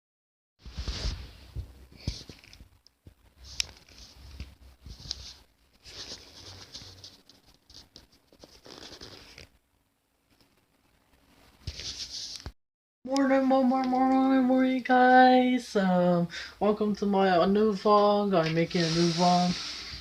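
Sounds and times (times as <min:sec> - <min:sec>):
rustling and scratching: 0:00.6 - 0:09.6, 0:10.3 - 0:12.6.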